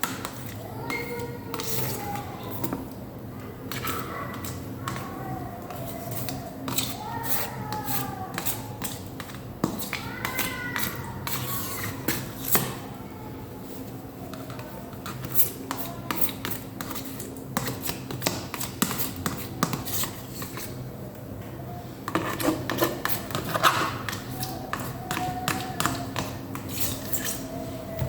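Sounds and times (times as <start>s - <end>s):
knife scraping and knocking container: 22.1s - 27.5s.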